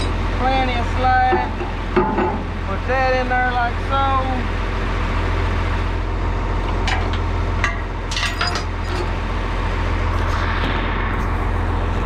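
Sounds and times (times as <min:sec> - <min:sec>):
diesel tractor engine idling: 0:00.0 - 0:12.0
metal chain clinking: 0:08.1 - 0:09.1.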